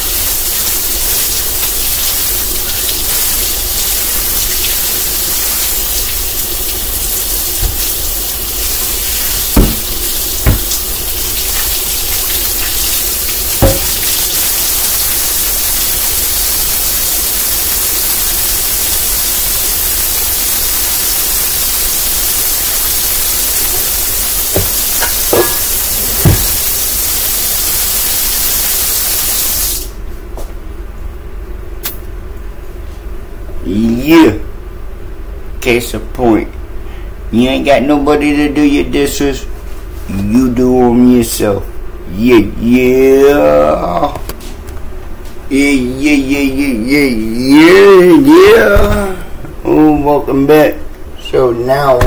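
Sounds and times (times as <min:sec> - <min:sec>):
tap running into a sink: 0:07.5 - 0:14.3, 0:24.5 - 0:26.7
dishes clanking: 0:13.6 - 0:14.1, 0:24.6 - 0:26.5.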